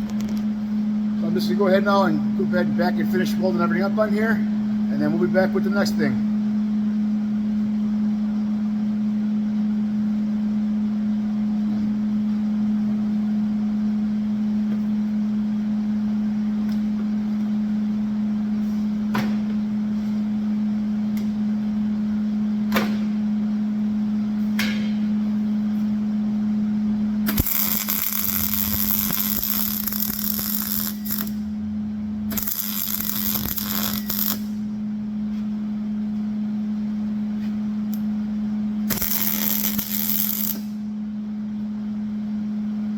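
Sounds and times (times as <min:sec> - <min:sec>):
steady low hum: 0:00.0 - 0:42.9
arc welding crackling sizzle: 0:27.3 - 0:31.6, 0:32.2 - 0:34.8, 0:38.9 - 0:40.9.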